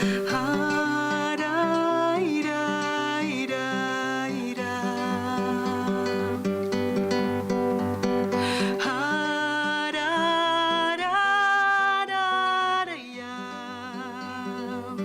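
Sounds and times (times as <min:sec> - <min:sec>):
wordless voice holding long notes: 0:00.0 - 0:06.5
guitar accompaniment: 0:00.0 - 0:15.0.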